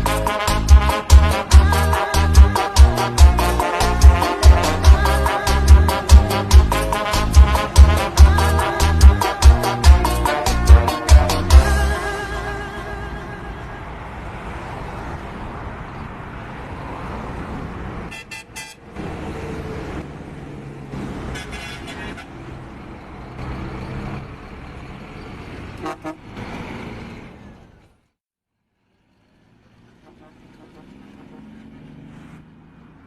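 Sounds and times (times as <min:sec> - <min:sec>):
car horn: 0:00.0 - 0:14.0, 0:18.1 - 0:18.9, 0:21.3 - 0:22.3, 0:25.8 - 0:26.3, 0:30.0 - 0:31.0
car engines running: 0:00.0 - 0:28.0, 0:28.7 - 0:33.0.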